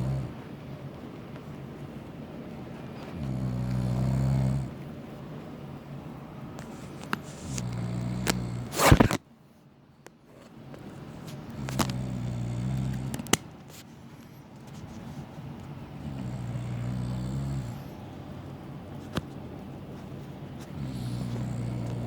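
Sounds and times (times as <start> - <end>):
man snoring heavily: 0.0 - 0.3, 3.1 - 4.8, 7.4 - 9.0, 11.6 - 13.2, 16.0 - 18.0, 20.8 - 22.0.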